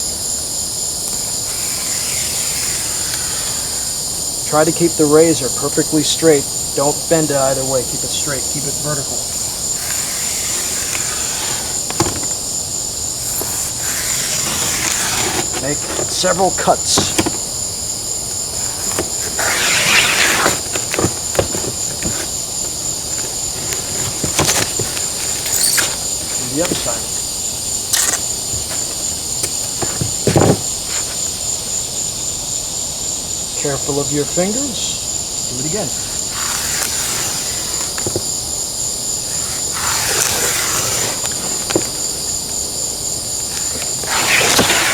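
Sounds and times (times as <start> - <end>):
crickets trilling: 0.0 - 44.9
razor blade cutting styrofoam: 1.1 - 4.0, 8.9 - 17.6, 18.5 - 27.2, 36.0 - 38.3, 39.2 - 42.1, 43.5 - 44.9.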